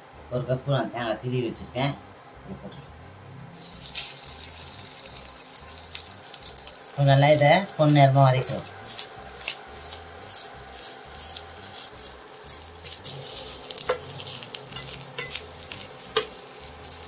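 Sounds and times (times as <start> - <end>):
food sizzling in a pan: 3.5 - 17.0
spatula scraping pan: 5.8 - 17.0.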